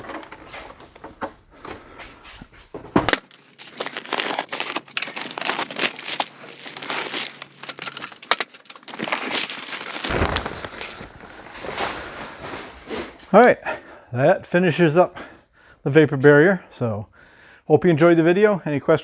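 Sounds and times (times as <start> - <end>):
plastic sheeting crinkling: 3.1 - 10.3.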